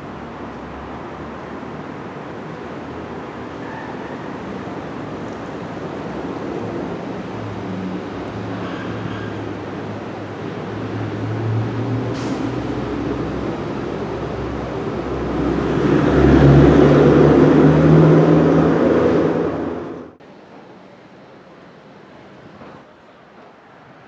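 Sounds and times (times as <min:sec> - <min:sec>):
vehicle engine approaching: 0:10.6 - 0:20.2.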